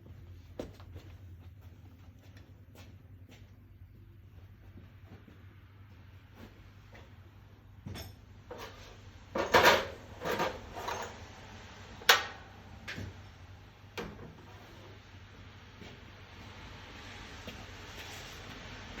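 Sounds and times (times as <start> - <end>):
metal tools clinking and knocking: 7.9 - 11.3.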